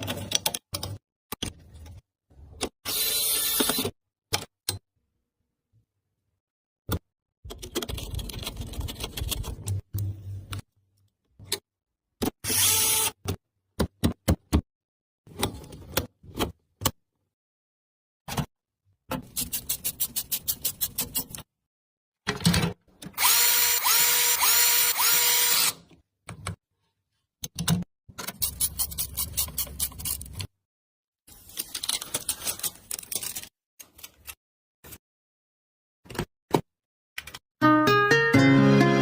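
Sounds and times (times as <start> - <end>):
power screwdriver whirring: 12.4 - 13.2, 23.2 - 25.8.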